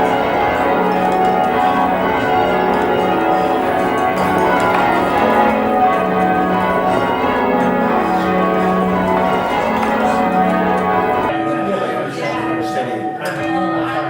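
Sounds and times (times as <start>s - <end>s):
church bells ringing: 0.0s - 14.0s.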